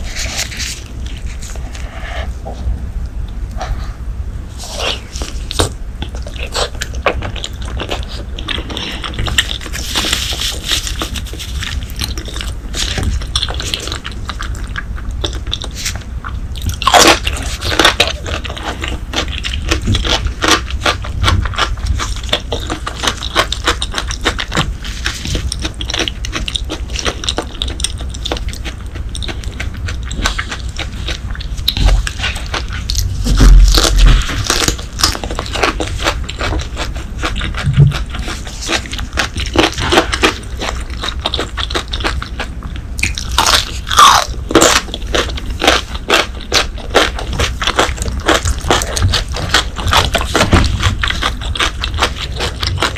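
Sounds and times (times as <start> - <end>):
person biting and chewing: 0.0 - 52.9.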